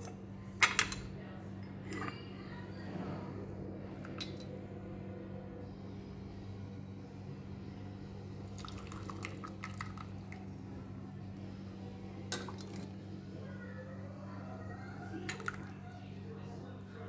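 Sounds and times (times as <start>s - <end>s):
steady low hum: 0.0s - 17.0s
metallic clinks of strainer and cups: 1.8s - 2.3s.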